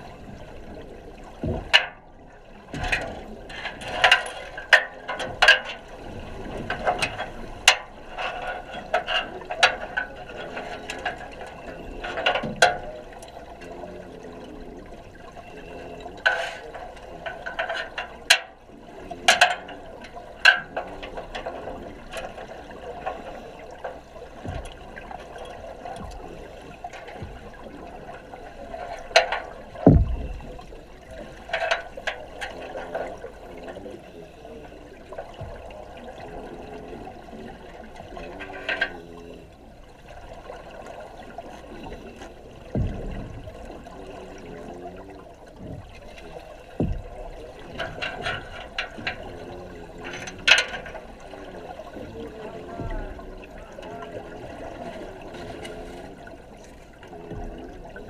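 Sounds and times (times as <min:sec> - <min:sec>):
underwater rush of water and bubbles: 0:00.0 - 0:58.0
deep thump: 0:29.8 - 0:30.7, 0:42.8 - 0:43.5, 0:46.8 - 0:47.2.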